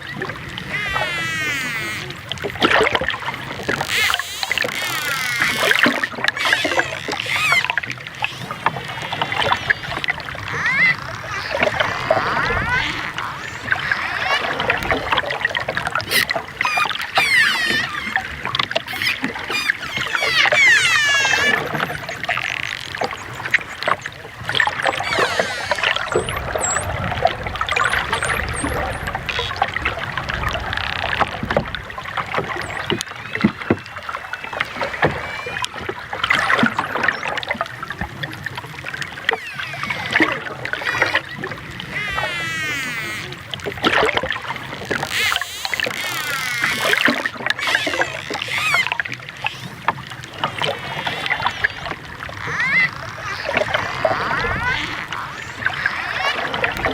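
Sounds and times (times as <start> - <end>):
dolphins whistling: 0.6 - 2.2, 3.8 - 29.6, 32.6 - 37.4, 39.2 - 43.5, 45.0 - 56.9
dolphin clicks: 3.5 - 15.2, 15.9 - 27.0, 39.2 - 56.9.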